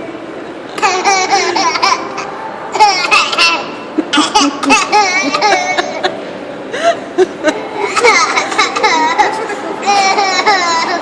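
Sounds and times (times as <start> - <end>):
laughter: 5.0 - 6.2, 7.2 - 9.5.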